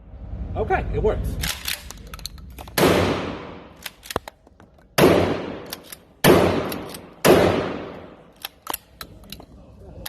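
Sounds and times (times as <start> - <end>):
shotgun shots echoing: 2.7 - 4.1, 5.0 - 8.3.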